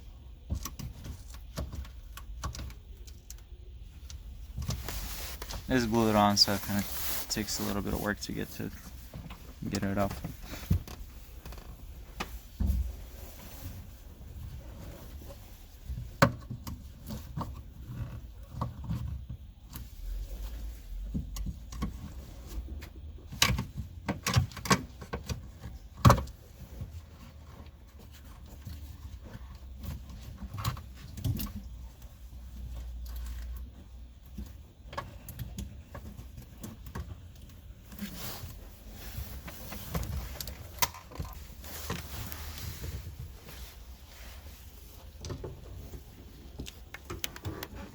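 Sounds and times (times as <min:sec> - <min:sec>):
clicks knocks and rubbing: 0:45.0 - 0:47.9.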